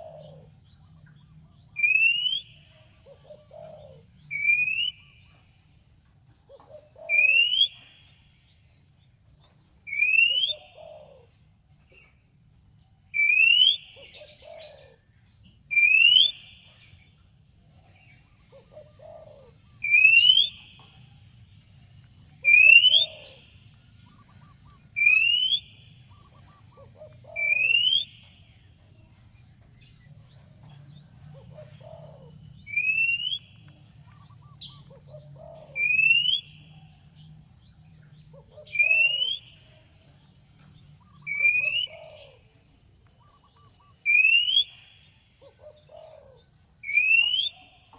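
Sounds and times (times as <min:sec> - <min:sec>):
bird upward whistle call: 0:01.8 - 0:02.6, 0:13.2 - 0:13.9, 0:15.7 - 0:16.4, 0:19.8 - 0:20.6, 0:22.4 - 0:23.4, 0:25.0 - 0:25.8, 0:32.7 - 0:33.5, 0:38.7 - 0:39.4, 0:44.1 - 0:44.8, 0:46.8 - 0:47.6.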